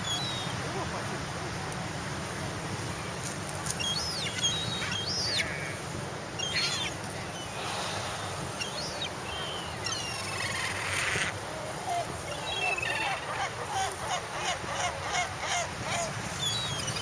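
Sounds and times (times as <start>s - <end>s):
seagulls calling: 8.6s - 17.0s.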